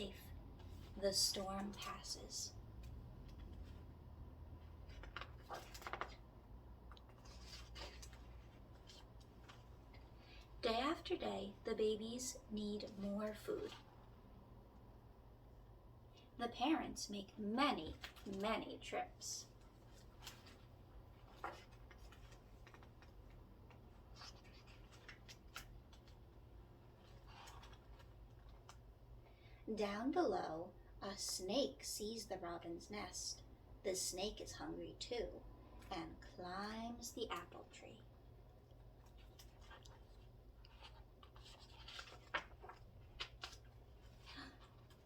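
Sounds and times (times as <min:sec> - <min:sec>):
book pages rustling: 0:00.6 - 0:10.4, 0:19.4 - 0:28.9, 0:38.8 - 0:45.0.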